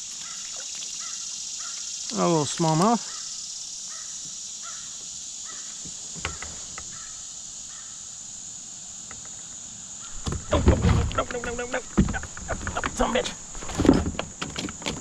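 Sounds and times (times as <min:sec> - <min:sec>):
bird calls: 0:00.0 - 0:08.2, 0:09.1 - 0:13.6
steady high hiss: 0:00.0 - 0:14.8
rustling and knocking of gear: 0:10.1 - 0:15.0.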